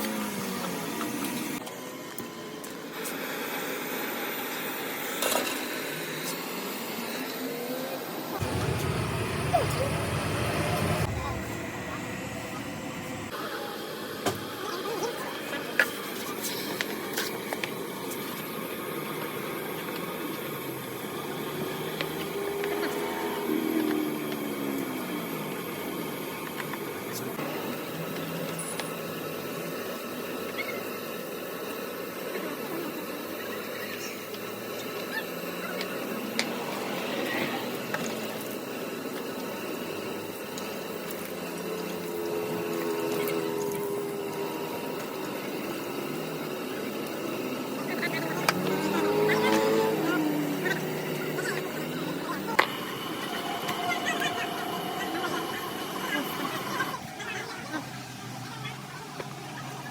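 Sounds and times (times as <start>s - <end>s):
engine running: 0.0s - 59.9s
workshop background noise: 0.0s - 59.9s
whine falling in pitch: 8.3s - 13.4s.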